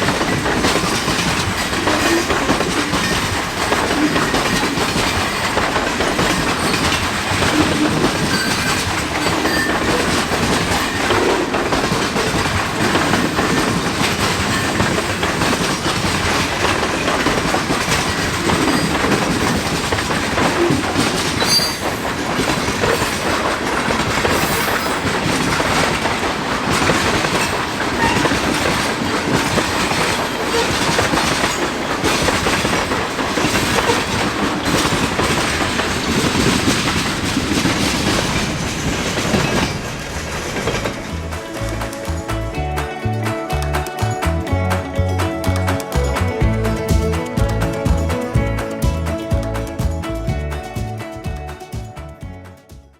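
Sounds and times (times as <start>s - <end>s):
train wheels clacking over rails: 0.0s - 44.3s
high wheel squeal: 0.8s - 11.5s, 14.2s - 26.2s, 26.8s - 34.9s.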